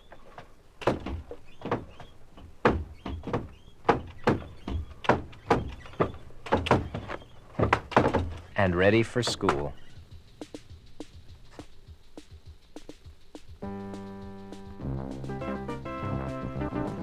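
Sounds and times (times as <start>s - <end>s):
doors opening and closing: 0.0s - 10.1s.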